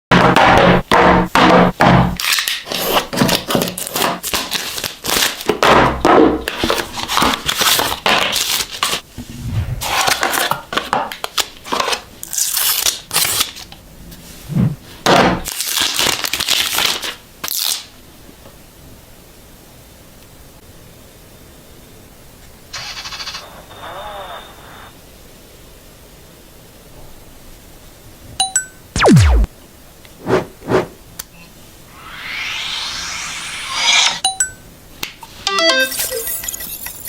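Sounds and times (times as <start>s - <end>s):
plastic wrap tearing and crinkling: 2.2s - 5.5s, 6.8s - 9.0s, 11.2s - 13.7s, 15.4s - 17.9s.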